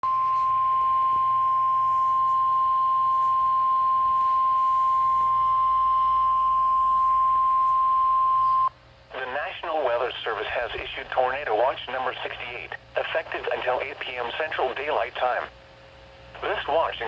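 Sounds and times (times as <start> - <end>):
steady high alarm tone: 0.0 - 8.7.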